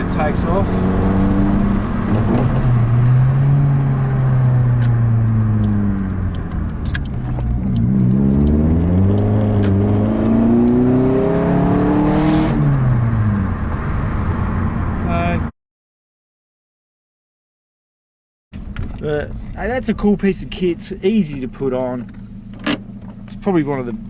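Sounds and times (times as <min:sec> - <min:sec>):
car engine accelerating: 0:00.0 - 0:15.5.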